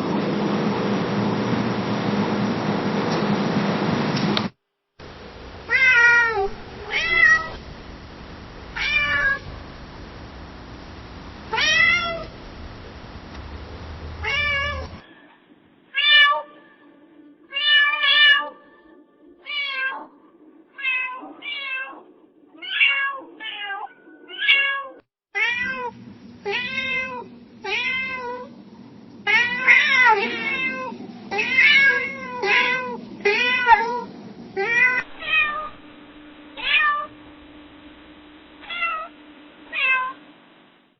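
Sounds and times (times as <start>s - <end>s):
cat meowing: 5.7s - 7.6s, 8.8s - 9.5s, 14.2s - 15.0s, 22.6s - 25.9s, 29.3s - 35.8s, 36.6s - 37.1s, 38.6s - 39.1s, 39.7s - 40.2s.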